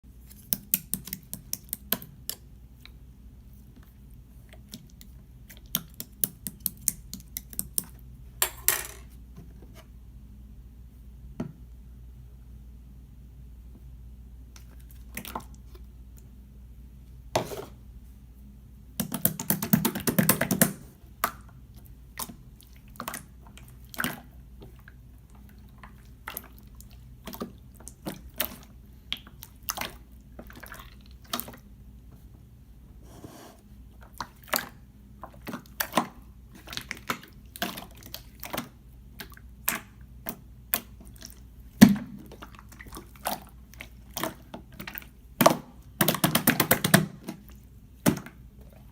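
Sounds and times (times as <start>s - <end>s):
slime squelching and popping: 0.2s - 3.0s, 34.0s - 48.6s.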